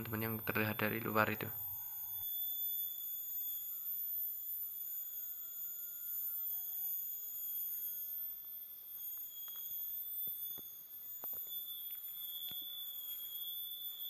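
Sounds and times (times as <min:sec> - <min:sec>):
high-pitched whine: 0:00.0 - 0:14.0.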